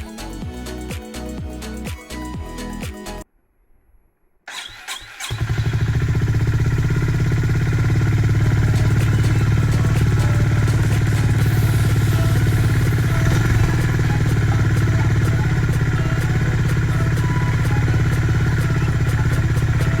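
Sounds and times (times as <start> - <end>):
motorcycle engine starting and idling: 4.5 - 20.0.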